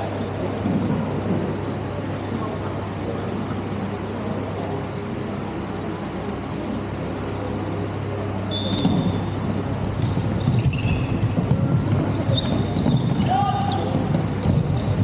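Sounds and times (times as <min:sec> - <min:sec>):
steady low hum: 0:00.0 - 0:15.0
shoes squeaking on floor: 0:08.5 - 0:15.0.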